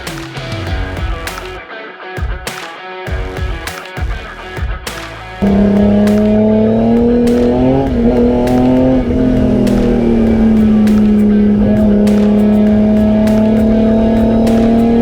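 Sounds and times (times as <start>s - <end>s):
race car engine revving: 5.4s - 15.0s
short sharp clicks: 7.2s - 7.8s, 8.4s - 8.9s, 12.0s - 12.6s, 13.2s - 13.7s.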